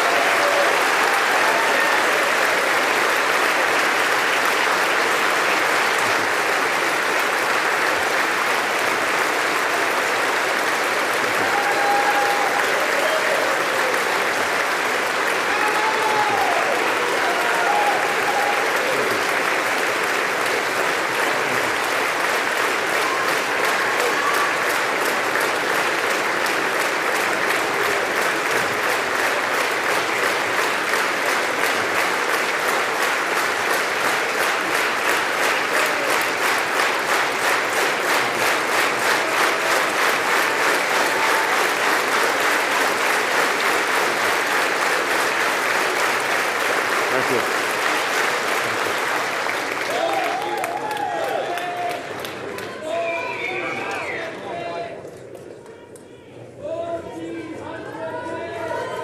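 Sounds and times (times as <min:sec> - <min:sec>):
large audience applauding: 0:00.0 - 0:55.9.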